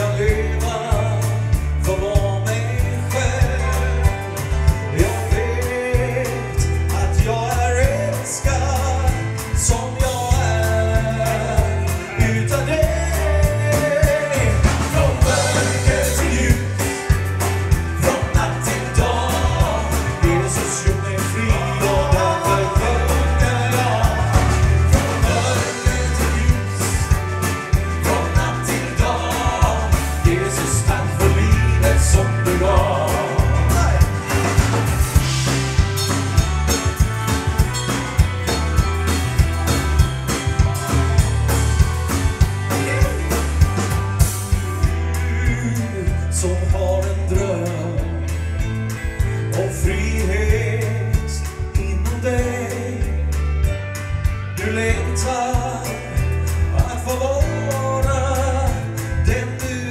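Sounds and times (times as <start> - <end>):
person singing: 0.0 - 34.7, 38.5 - 44.0, 49.4 - 53.3
live band playing: 0.0 - 59.9.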